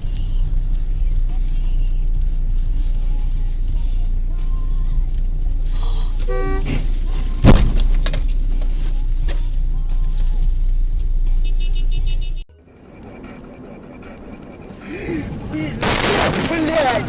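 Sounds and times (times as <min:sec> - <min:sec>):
car driving rumble: 0:00.0 - 0:17.0
car horn: 0:06.1 - 0:07.8, 0:11.3 - 0:12.5
loud collision bang: 0:15.8 - 0:16.8.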